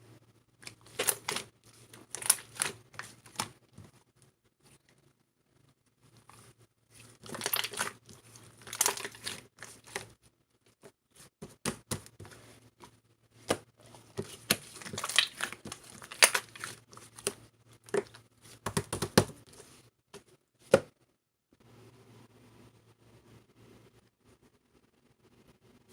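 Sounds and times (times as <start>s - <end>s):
slime squished by hand: 7.0s - 10.1s, 13.4s - 19.6s.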